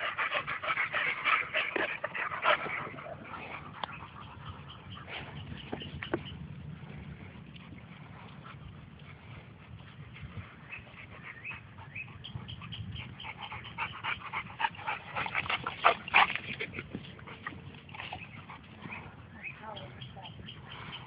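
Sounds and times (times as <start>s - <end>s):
dogs yipping and whining: 10.6s - 16.8s.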